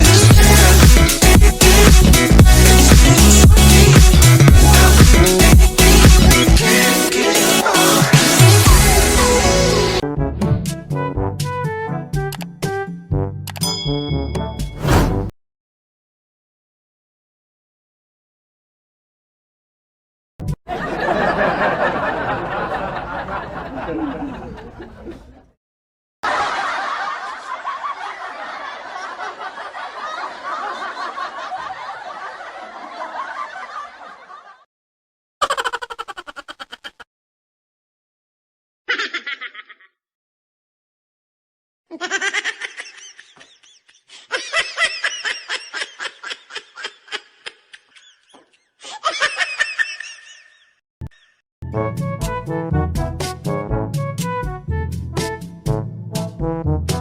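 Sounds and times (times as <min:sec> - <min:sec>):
recorded laughter: 0:20.7 - 0:25.5, 0:26.2 - 0:34.6, 0:35.4 - 0:37.1, 0:38.9 - 0:39.9, 0:41.9 - 0:51.4
high-pitched laughter: 0:35.4 - 0:37.1, 0:38.9 - 0:40.0, 0:41.9 - 0:51.4.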